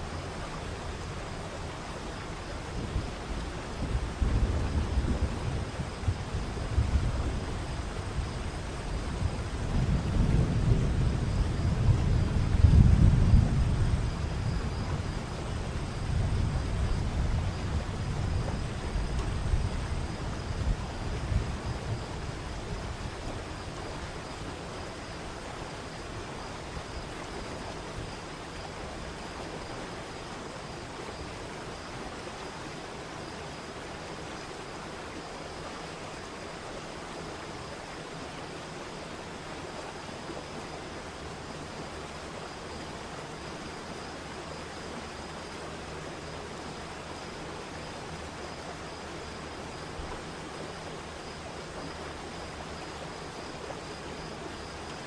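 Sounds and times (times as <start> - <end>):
thunder rumbling: 3.8 - 7.6, 9.0 - 22.0.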